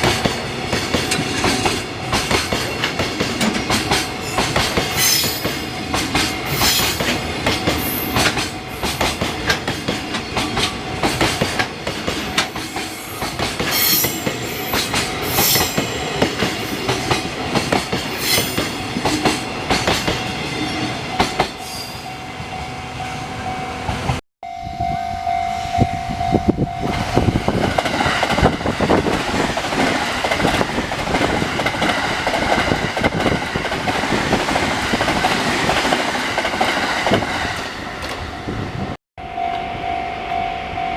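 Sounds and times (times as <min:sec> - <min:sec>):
train wheels clicking over rail joints: 0:00.0 - 0:20.3, 0:27.0 - 0:38.3
train rumble: 0:24.9 - 0:39.0.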